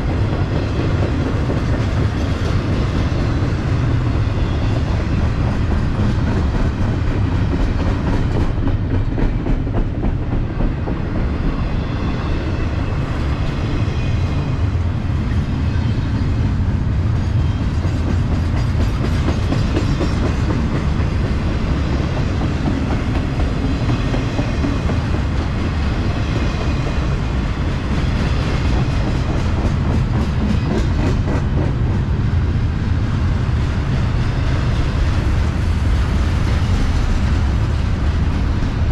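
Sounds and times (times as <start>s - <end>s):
freight train rumbling past: 0.0s - 38.9s.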